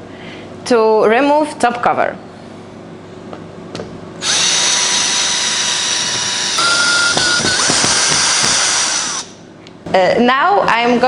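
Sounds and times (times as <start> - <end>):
cordless drill motor whine: 4.2 - 9.3.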